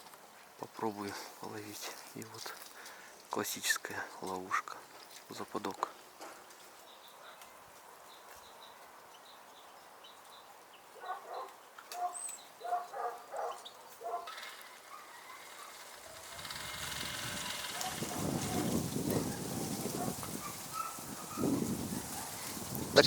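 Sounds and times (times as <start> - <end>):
small birds chirping: 0.0 - 23.0
rustling noise: 13.9 - 23.0.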